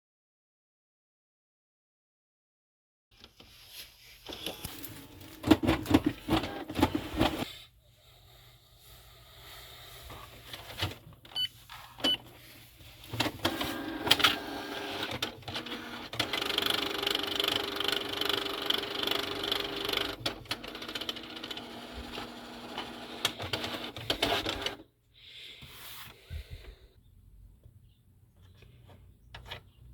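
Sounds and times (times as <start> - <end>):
printer paper feed clicking and grinding: 4.3 - 7.5, 13.1 - 24.8.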